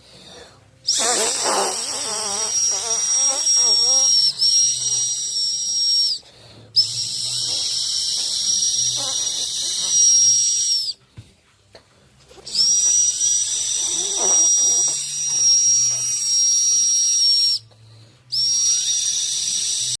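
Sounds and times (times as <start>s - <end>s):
turbo whistle: 0.8s - 11.0s, 12.4s - 17.7s, 18.3s - 20.0s.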